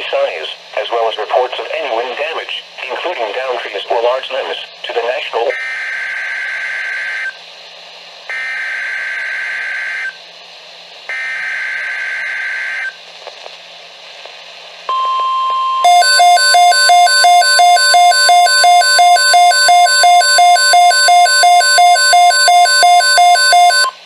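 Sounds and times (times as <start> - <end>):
radio hiss: 0.0 - 5.6, 12.4 - 14.9
rapid pulsing beep alarm: 14.9 - 24.0
steady warning alert tone: 14.9 - 24.0.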